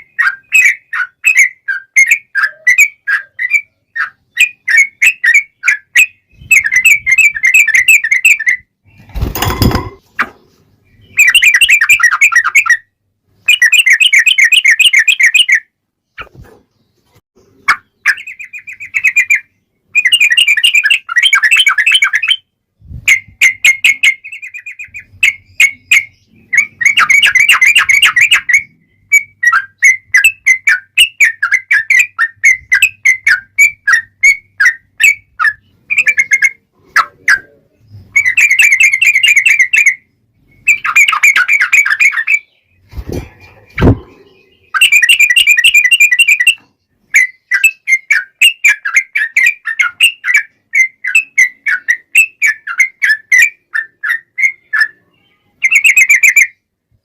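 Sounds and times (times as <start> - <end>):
bird chirping and trilling: 0.0 - 56.7
rustling thump: 42.9 - 44.2.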